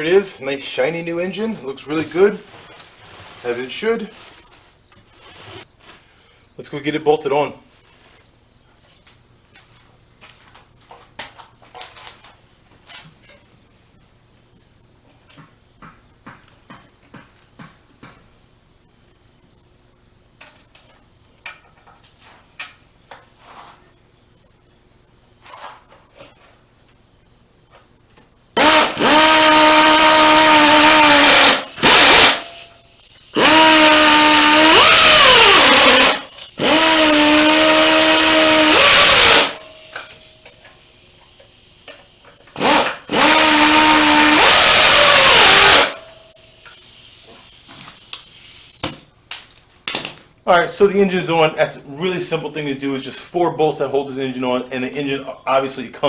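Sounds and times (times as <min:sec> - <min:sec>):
crickets chirping: 0:00.0 - 0:56.0
power drill running: 0:28.6 - 0:32.7, 0:33.3 - 0:40.1, 0:42.6 - 0:46.2
tools clinking: 0:38.9 - 0:43.3.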